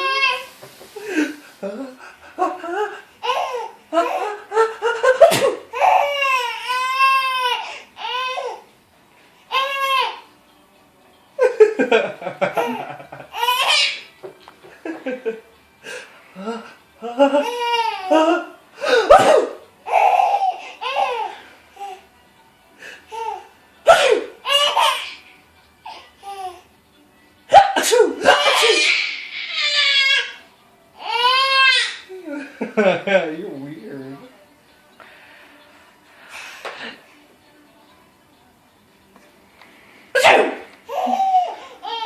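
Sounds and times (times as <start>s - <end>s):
baby laughing: 1.1s - 8.6s, 12.4s - 14.1s, 17.0s - 22.0s, 24.4s - 25.2s, 27.6s - 30.4s, 40.9s - 42.0s
fake sneeze: 5.2s - 5.7s, 18.9s - 19.6s, 23.9s - 24.4s, 27.5s - 29.2s, 40.1s - 40.7s.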